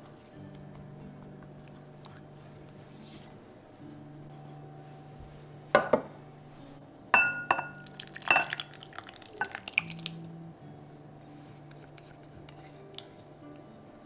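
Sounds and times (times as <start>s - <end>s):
utensil scraping glass bowl: 11.2s - 13.3s.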